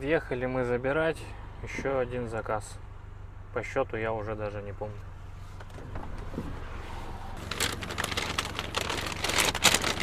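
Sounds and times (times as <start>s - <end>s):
car engine idling: 7.4s - 10.0s
rustling: 7.4s - 10.0s.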